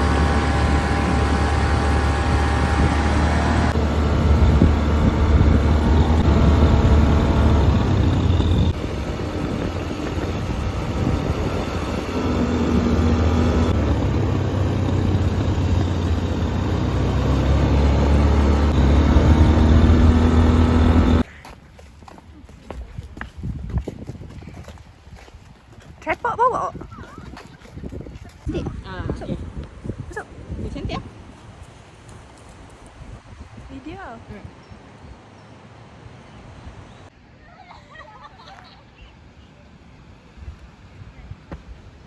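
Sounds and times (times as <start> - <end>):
vehicle engine rumble: 0.0 - 21.3.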